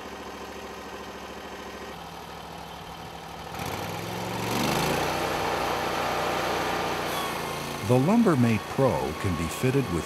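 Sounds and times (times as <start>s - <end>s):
sawmill engine running: 0.0s - 10.0s.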